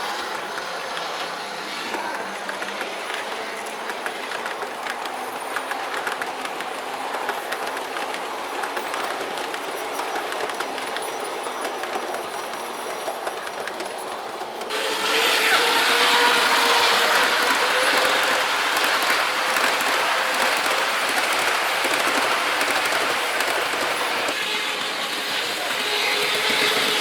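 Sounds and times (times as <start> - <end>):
model train wheels clicking: 0.0 - 27.0.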